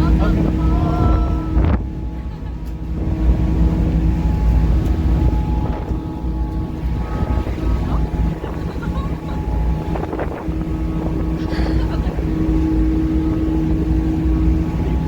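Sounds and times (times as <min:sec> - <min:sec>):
ferry engines droning: 0:00.0 - 0:15.0
wind buffeting microphone: 0:00.0 - 0:15.0.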